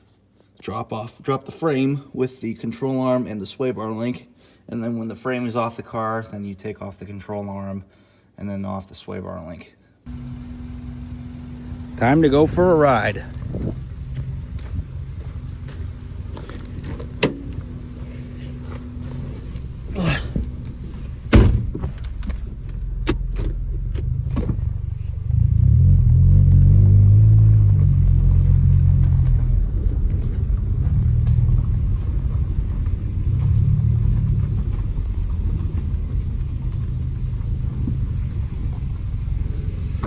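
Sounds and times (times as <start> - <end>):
car engine low rumble: 10.1 - 40.0
loud thump: 18.7 - 22.5.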